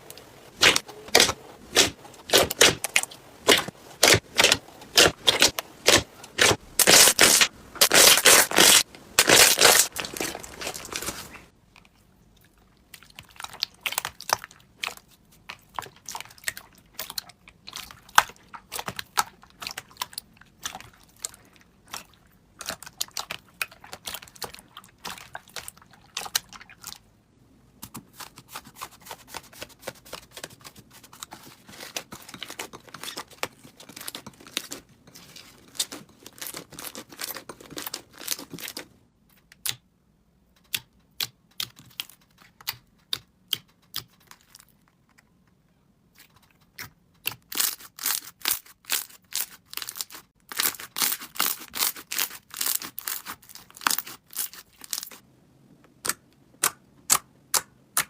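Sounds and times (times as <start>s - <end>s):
slime crackling and popping: 0.6s - 10.9s.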